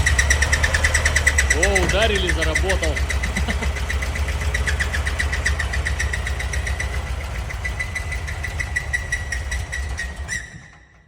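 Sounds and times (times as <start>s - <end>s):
car engine idling: 0.0s - 11.0s
rhythmic squeak: 0.0s - 11.0s.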